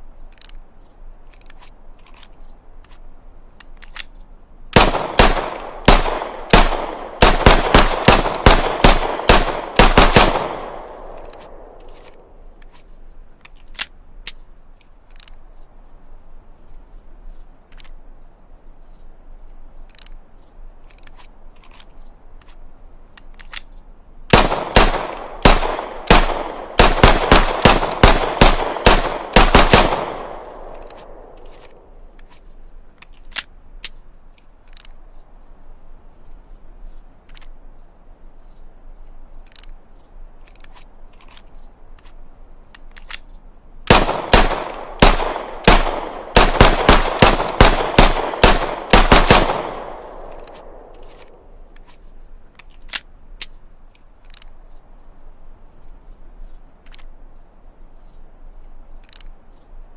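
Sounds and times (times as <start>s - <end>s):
pistol shots: 4.8s - 12.2s, 24.3s - 31.7s, 43.9s - 51.4s.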